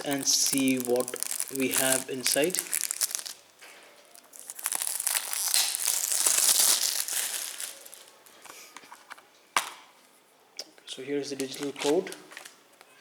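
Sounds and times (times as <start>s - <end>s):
plastic wrap crinkling and tearing: 0.0s - 8.6s.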